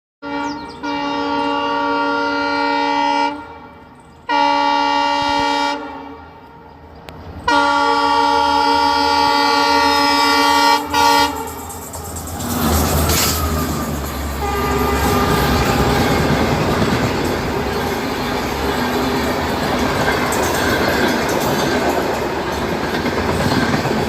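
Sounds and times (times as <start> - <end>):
locomotive horn chord blasts: 0.2 - 6.9, 7.5 - 11.9, 12.8 - 18.6
train running noise: 0.2 - 24.0.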